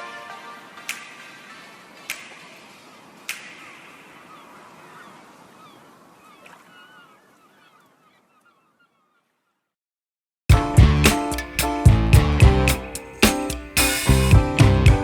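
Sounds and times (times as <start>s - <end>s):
birds chirping: 3.2s - 9.6s.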